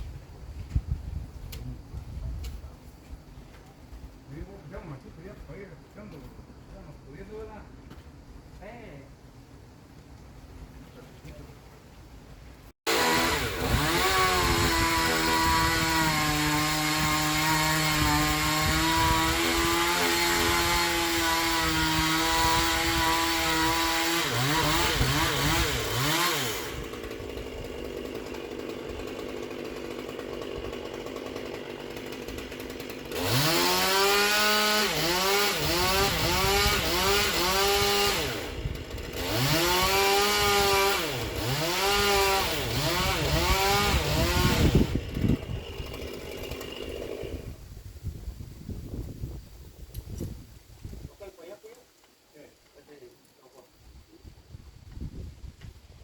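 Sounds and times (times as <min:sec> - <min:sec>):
chainsaw cutting and revving: 0:12.9 - 0:47.6.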